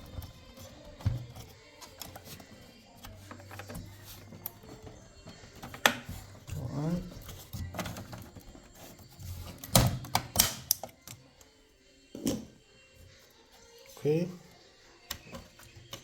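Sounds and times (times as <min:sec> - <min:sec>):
computer parts clicking and knocking: 0:07.2 - 0:11.2.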